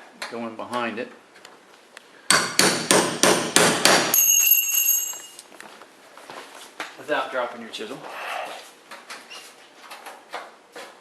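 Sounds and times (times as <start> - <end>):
hammer striking chisel: 2.3 - 4.8.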